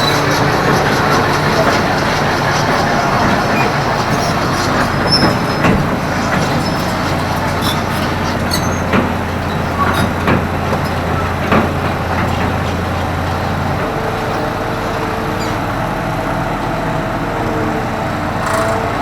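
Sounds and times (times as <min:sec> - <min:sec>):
machine knocks and clanks: 0:00.0 - 0:14.0
excavator diesel engine running: 0:00.0 - 0:19.0.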